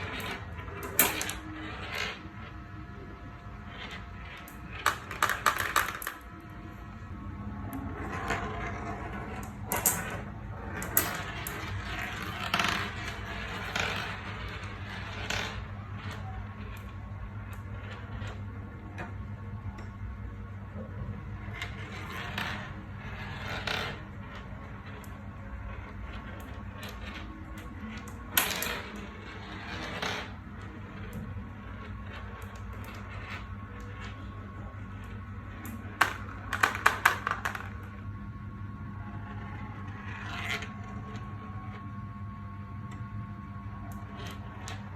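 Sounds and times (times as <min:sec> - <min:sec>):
marbles clattering: 0:00.0 - 0:02.2, 0:03.7 - 0:06.3, 0:08.0 - 0:17.1, 0:35.6 - 0:38.0
marbles rolling on track: 0:00.0 - 0:06.6, 0:07.7 - 0:20.0, 0:20.8 - 0:38.1, 0:38.9 - 0:41.8, 0:43.8 - 0:44.9
steady low hum: 0:00.0 - 0:44.9
marbles clacking down a track: 0:03.8 - 0:06.2, 0:35.6 - 0:38.0.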